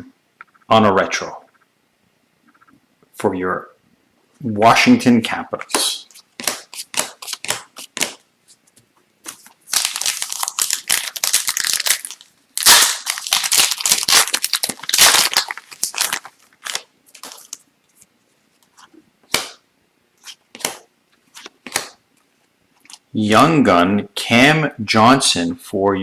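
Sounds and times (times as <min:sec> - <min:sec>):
foil wrapper tearing and crinkling: 0:09.3 - 0:17.6.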